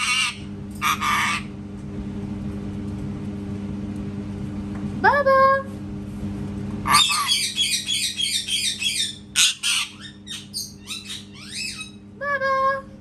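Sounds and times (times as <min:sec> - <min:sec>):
parrot chattering: 0:00.0 - 0:01.5, 0:06.8 - 0:12.9
parrot squawks: 0:00.0 - 0:01.5, 0:06.8 - 0:12.0
parrot whistled calls: 0:06.9 - 0:12.0.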